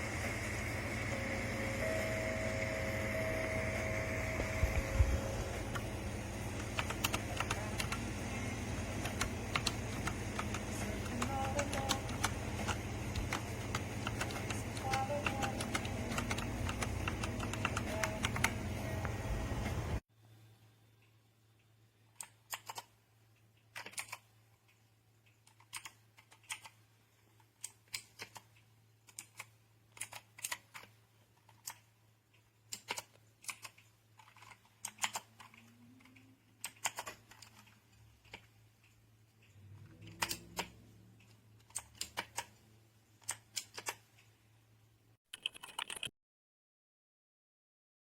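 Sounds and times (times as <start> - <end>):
mechanical keyboard key clicks: 45.4 - 46.1.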